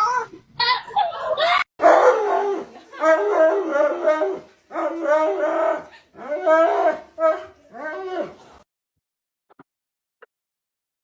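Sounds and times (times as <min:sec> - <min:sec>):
dog howling: 0:01.3 - 0:08.4.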